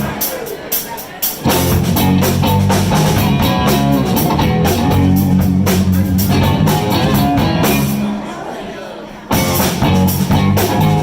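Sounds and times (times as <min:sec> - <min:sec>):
live blues band playing: 0:00.0 - 0:08.3, 0:09.3 - 0:11.0.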